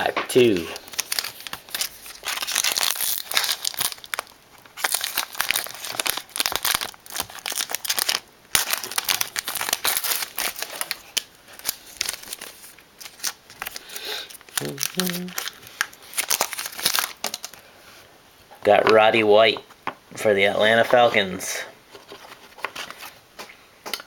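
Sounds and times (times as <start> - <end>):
plastic wrapper tearing and crinkling: 0.4 - 17.6.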